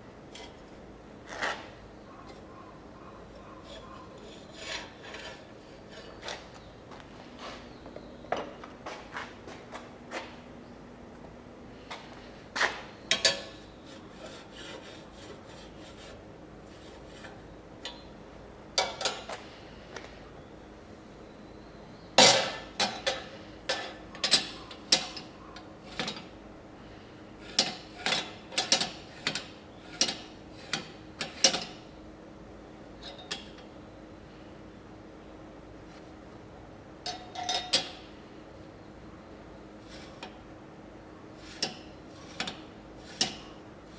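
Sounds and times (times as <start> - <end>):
metal scraping: 3.6 - 6.5, 12.6 - 17.5, 39.8 - 40.4, 41.4 - 43.9
knocks and clinks on metal: 37.0 - 38.0.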